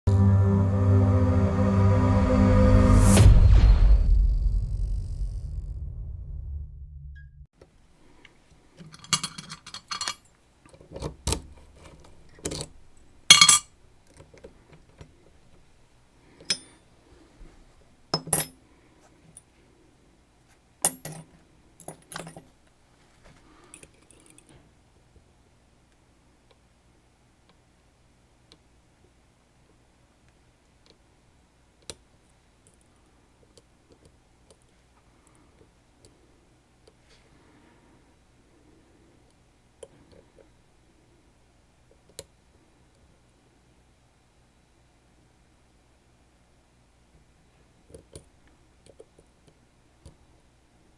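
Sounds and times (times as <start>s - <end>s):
small metal parts clinking: 8.8s - 10.3s, 13.3s - 13.7s.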